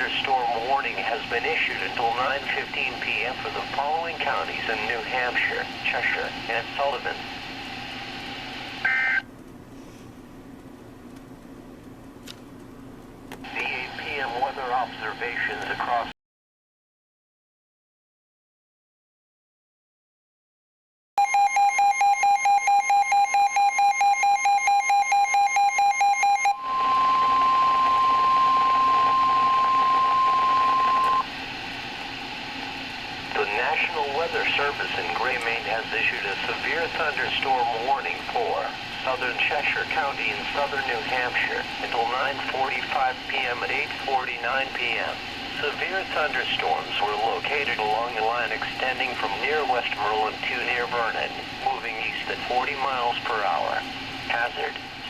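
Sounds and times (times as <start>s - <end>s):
quiet broadcast background: 0.0s - 7.3s, 13.4s - 16.1s, 33.2s - 55.0s
radio hiss: 0.0s - 9.2s, 13.4s - 16.1s, 26.6s - 55.0s
steady warning alarm tone: 21.2s - 53.8s.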